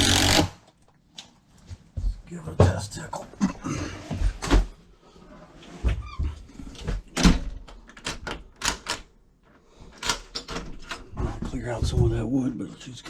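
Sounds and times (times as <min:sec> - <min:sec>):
door latch clicks and knocks: 0:07.2 - 0:09.1.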